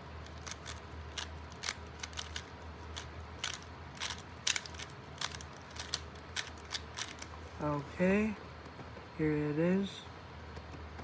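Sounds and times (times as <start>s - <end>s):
plastic puzzle cube clicking: 0.2s - 7.4s.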